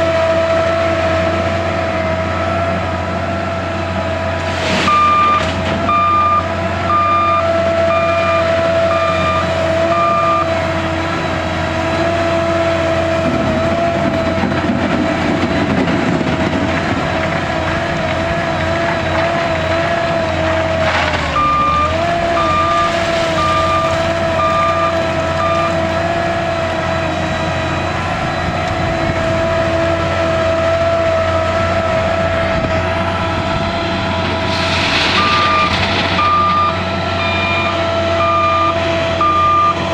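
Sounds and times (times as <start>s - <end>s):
diesel engine with high whine: 0.0s - 39.9s
reversing alarm beeps: 4.8s - 12.3s, 21.2s - 28.7s, 35.0s - 39.9s.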